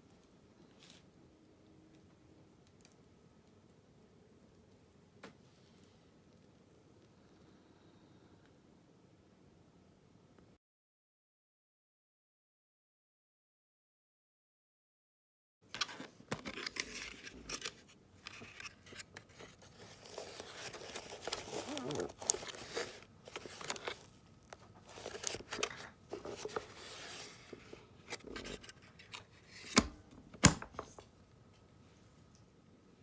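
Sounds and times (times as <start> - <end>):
packaging rustling: 15.8 - 29.8.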